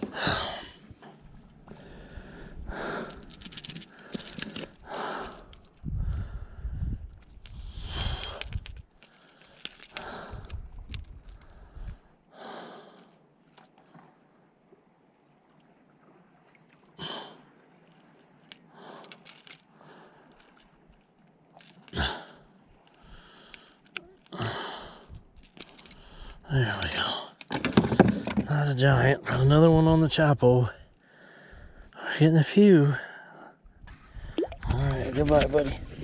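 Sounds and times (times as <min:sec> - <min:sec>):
fish handling noises: 0:00.0 - 0:05.9, 0:07.0 - 0:12.0
wind rumbling on microphone: 0:05.7 - 0:08.9, 0:10.0 - 0:12.0, 0:33.7 - 0:36.0.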